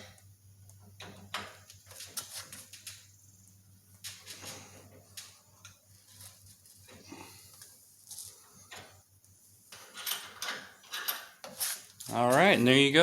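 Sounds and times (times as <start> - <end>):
low steady hum: 0.0 - 11.0
clicks and rustling of tools: 9.7 - 12.2.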